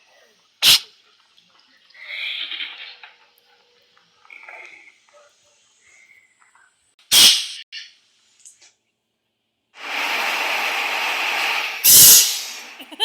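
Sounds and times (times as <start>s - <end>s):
cat sneezing: 0.6s - 0.9s
steady hiss: 9.8s - 13.0s.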